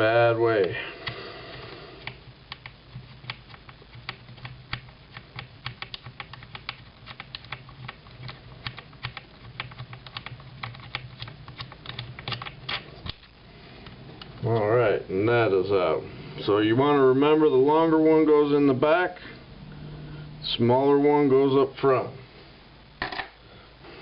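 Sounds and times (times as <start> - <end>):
faint low hum: 0.0 - 24.0.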